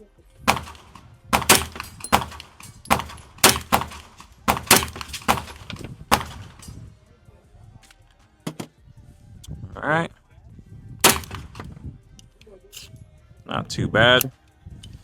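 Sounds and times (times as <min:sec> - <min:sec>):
gunshots with short echo: 0:00.4 - 0:06.8, 0:11.0 - 0:11.8.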